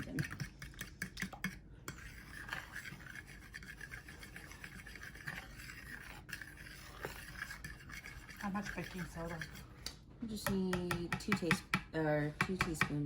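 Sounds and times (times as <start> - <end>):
utensil scraping a container: 0.0 - 9.8.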